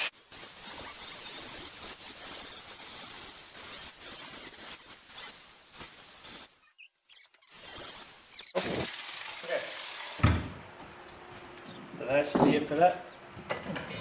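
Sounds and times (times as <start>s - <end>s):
steel being ground: 0.0s - 10.2s.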